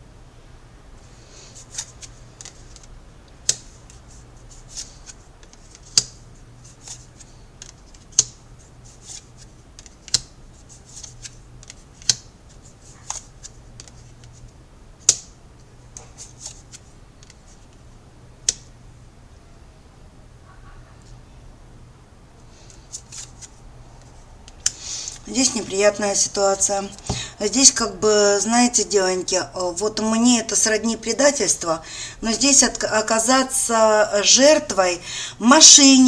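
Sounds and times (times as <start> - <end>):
cards rustling and flicking: 1.3 - 17.8, 22.5 - 28.0
playing cards snapping: 7.6 - 8.4, 11.0 - 12.3, 15.0 - 15.4.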